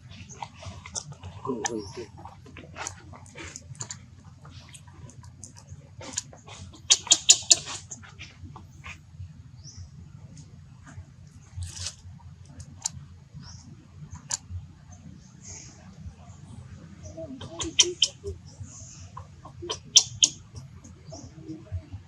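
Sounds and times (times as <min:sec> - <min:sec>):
baby monkey squeaking: 0:06.9 - 0:07.8, 0:17.4 - 0:18.4, 0:19.6 - 0:20.5.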